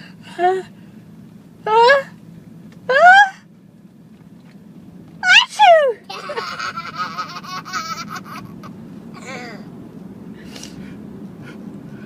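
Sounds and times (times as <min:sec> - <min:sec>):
baby laughing: 0:06.1 - 0:09.6.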